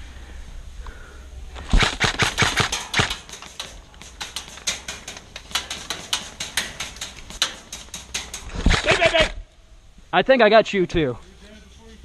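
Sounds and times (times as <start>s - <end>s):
airsoft guns firing: 1.6s - 9.0s.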